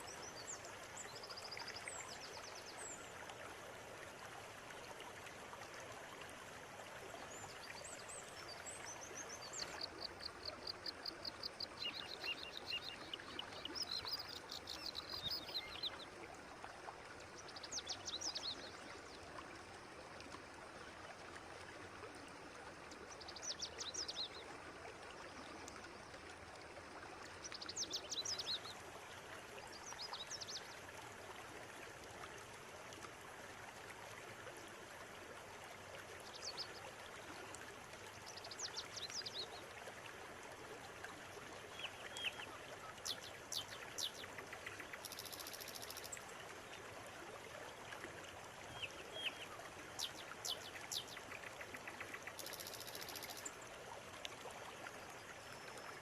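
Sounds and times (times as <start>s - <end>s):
river water flowing: 0.0s - 56.0s
songbird singing: 7.5s - 16.1s, 17.4s - 18.9s, 23.2s - 24.4s, 27.4s - 28.7s, 41.7s - 46.2s, 48.7s - 53.6s.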